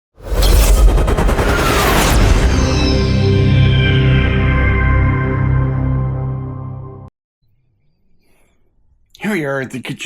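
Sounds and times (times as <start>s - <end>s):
boom sound effect: 0.2s - 5.8s
intro music of low tones: 0.9s - 7.1s.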